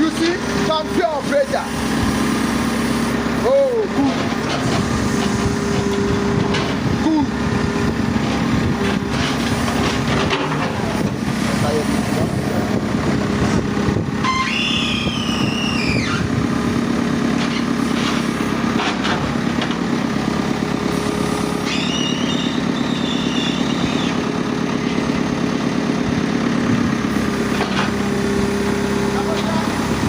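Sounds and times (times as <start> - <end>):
diesel engine running: 0.0 - 30.0
high-pitched squeals: 14.2 - 16.3, 21.6 - 24.2.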